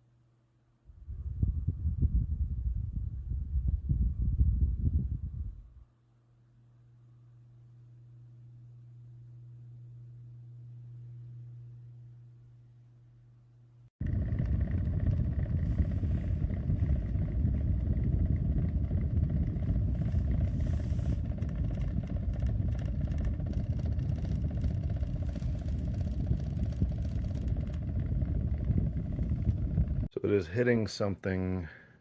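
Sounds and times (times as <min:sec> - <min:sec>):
fan faint steady hum: 0:00.0 - 0:32.0
box fan rumbling clatter: 0:00.9 - 0:05.8, 0:14.0 - 0:30.1.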